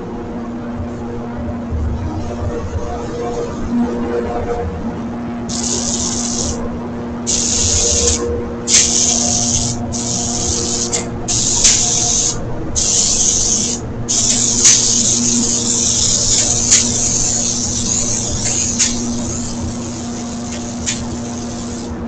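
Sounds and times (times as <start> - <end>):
steady hum: 0.0 - 22.0
spray gun hissing: 5.5 - 6.6, 7.3 - 22.0
sharp clicks: 7.3 - 21.8.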